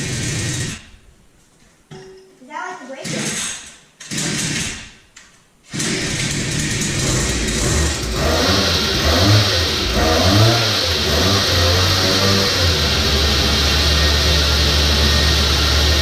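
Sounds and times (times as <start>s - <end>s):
mini bike engine starting and revving: 0.0s - 0.9s, 5.7s - 16.0s.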